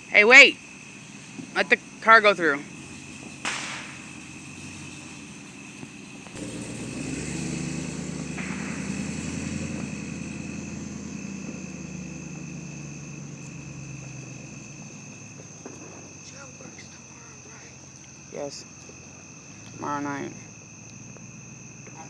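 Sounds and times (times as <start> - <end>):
car driving past: 0.6 - 22.0.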